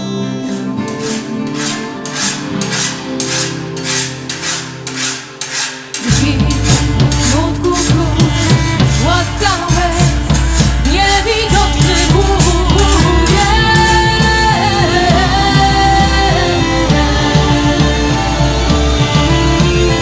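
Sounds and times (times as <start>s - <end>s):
drums and instruments: 0.0s - 20.0s
woman singing folk song: 6.0s - 20.0s.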